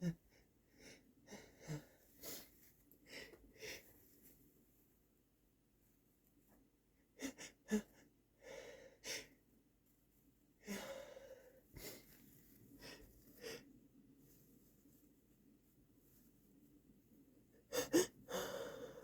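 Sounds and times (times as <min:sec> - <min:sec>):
heavy gasping breaths: 0:17.7 - 0:19.0.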